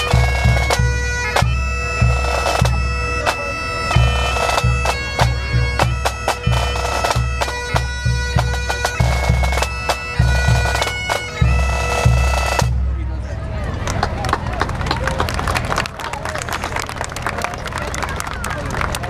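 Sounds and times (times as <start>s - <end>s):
bagpipes playing melody with drones: 0.0s - 13.0s
drum strokes: 0.0s - 13.0s.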